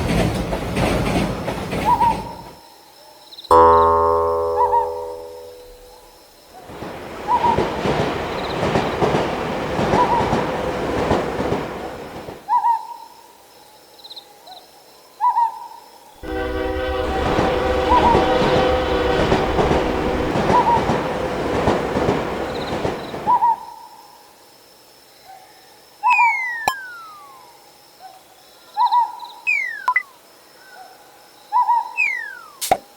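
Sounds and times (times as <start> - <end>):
train rumbling and clattering: 0.0 - 2.6, 6.7 - 12.5, 16.2 - 23.6
train horn blast: 16.2 - 22.9.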